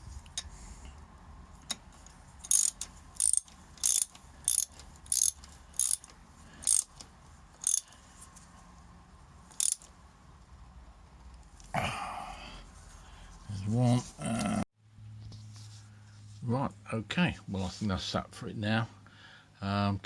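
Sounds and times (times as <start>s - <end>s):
ratchet wrench clicking: 2.4s - 8.0s, 9.5s - 9.9s.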